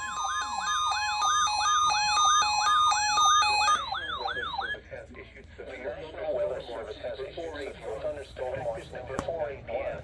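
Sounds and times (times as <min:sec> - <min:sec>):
electronic siren yelping: 0:00.0 - 0:04.8.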